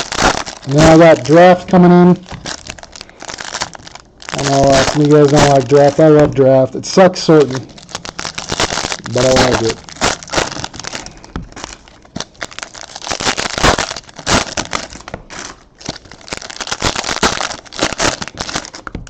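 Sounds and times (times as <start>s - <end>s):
foil wrappers crinkling: 0.0s - 19.0s.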